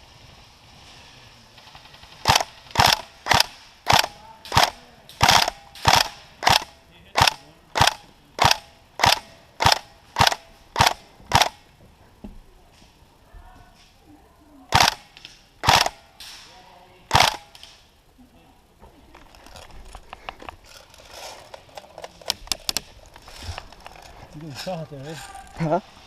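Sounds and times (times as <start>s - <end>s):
airsoft rifle single shots: 2.2s - 11.6s, 14.7s - 16.5s, 17.1s - 17.8s.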